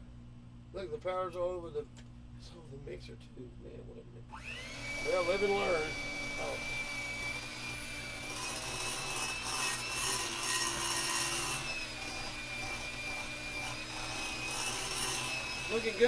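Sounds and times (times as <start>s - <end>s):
stand mixer motor whine: 4.3s - 16.0s.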